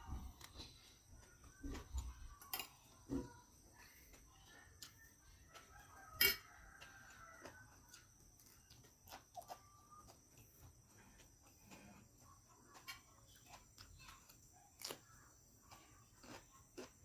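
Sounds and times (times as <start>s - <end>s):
quiet eating sounds: 0.0s - 17.0s
chicken clucking: 5.2s - 7.8s
utensil clinking on a plate: 6.0s - 6.8s.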